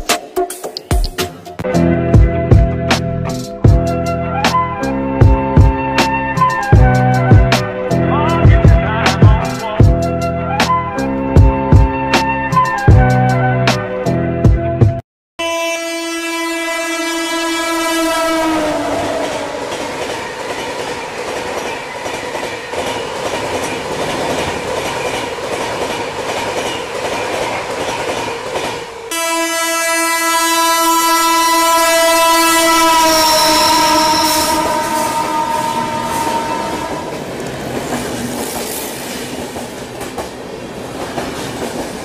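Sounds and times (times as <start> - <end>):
train horn: 15.4 - 20.0, 29.1 - 37.5
train wheels clacking over rail joints: 19.2 - 28.9.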